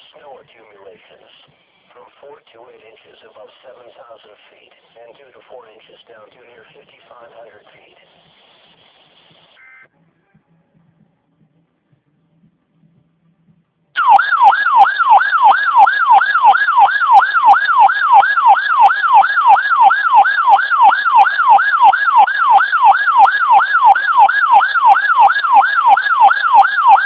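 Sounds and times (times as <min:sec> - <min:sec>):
electronic siren sweeping: 0:14.0 - 0:27.0.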